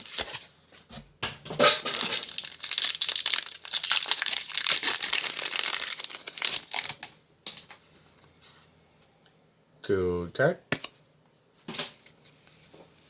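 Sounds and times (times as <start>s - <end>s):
foil wrapper tearing and crinkling: 1.6s - 7.2s.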